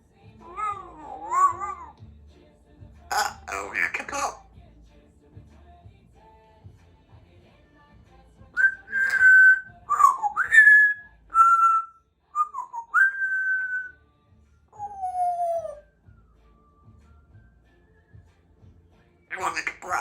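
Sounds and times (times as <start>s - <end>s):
parrot whistling: 0.4s - 2.0s, 3.1s - 4.4s, 8.6s - 14.0s, 14.7s - 17.5s, 19.3s - 20.0s.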